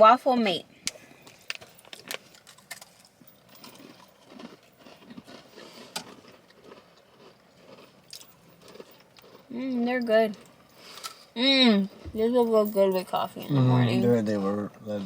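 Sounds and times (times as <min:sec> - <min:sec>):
people chewing crisp snack: 0:00.9 - 0:12.2.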